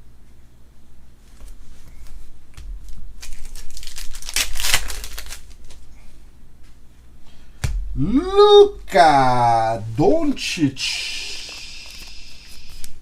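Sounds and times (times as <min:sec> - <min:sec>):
foil pack crinkling and tearing: 0:02.9 - 0:05.9, 0:11.4 - 0:13.0.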